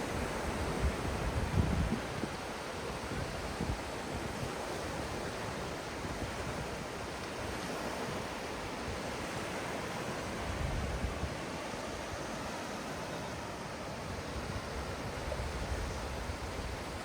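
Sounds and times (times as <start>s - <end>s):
wind rumble on microphone: 0.0s - 13.0s, 13.9s - 17.0s
ocean surf washing on beach: 0.0s - 17.0s.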